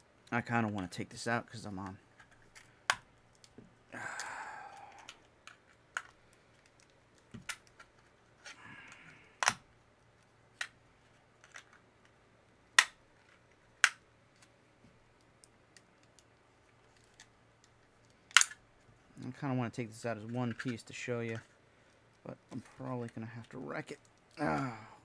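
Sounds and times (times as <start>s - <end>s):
plastic clicks and snaps: 8.9s - 9.6s, 12.8s - 13.0s.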